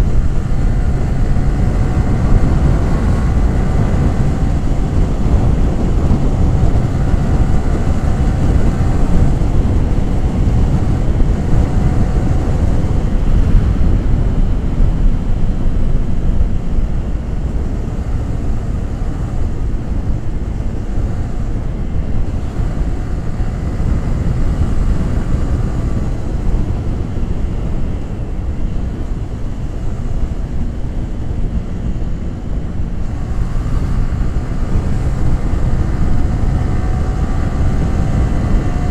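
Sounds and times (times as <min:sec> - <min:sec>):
motorcycle engine running: 0:00.0 - 0:38.9
wind buffeting microphone: 0:00.0 - 0:38.9.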